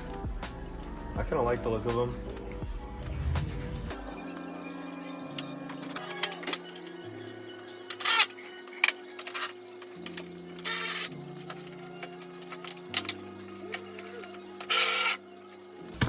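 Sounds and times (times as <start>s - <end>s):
background music with bass line: 0.0s - 6.2s.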